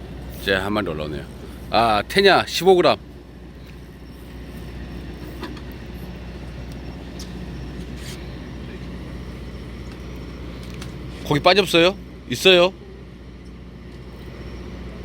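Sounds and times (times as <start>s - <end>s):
boat machinery droning: 0.0s - 15.0s.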